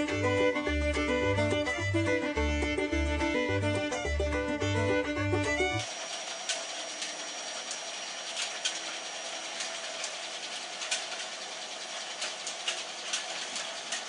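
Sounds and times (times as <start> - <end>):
model train motor hum: 0.0 - 14.0
light clicks of train on track: 6.4 - 11.4, 12.0 - 14.0.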